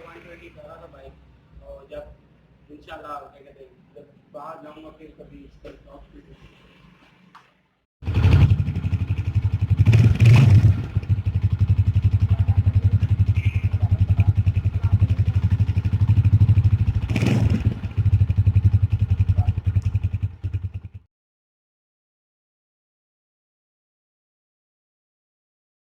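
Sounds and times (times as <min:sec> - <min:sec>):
motorcycle engine running: 0:08.0 - 0:21.1.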